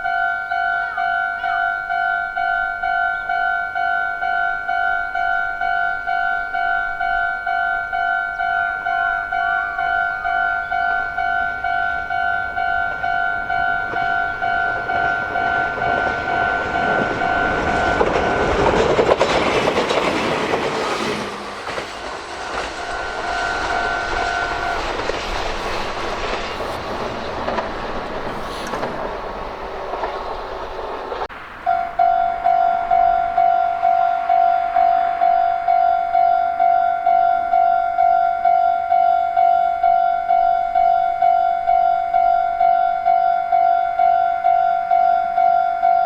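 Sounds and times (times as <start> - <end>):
level-crossing alarm bell ringing: 0.0 - 19.0, 22.3 - 25.0, 31.7 - 46.0
train passing: 0.0 - 46.0.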